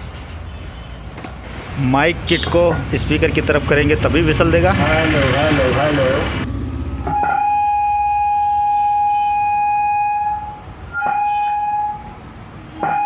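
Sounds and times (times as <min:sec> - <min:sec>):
acoustic feedback whistle: 0:07.1 - 0:12.2.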